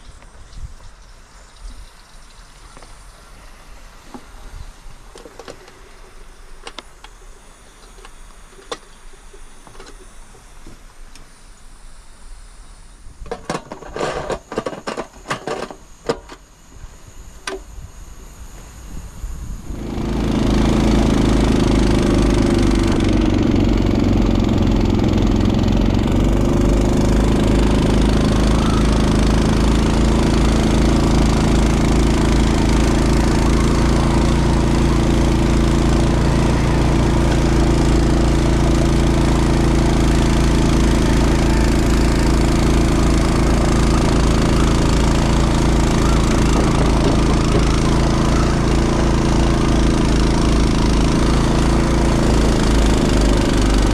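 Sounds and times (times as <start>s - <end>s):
snowblower engine running: 13.2s - 53.9s.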